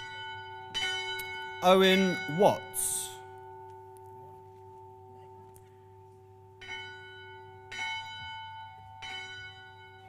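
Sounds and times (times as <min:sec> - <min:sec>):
bell ringing: 0:00.8 - 0:03.2.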